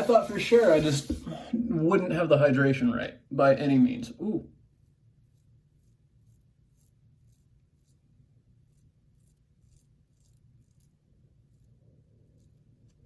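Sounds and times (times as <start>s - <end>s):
razor scratching through stubble: 0.0s - 1.2s, 4.6s - 13.0s
low room hum: 0.0s - 13.0s.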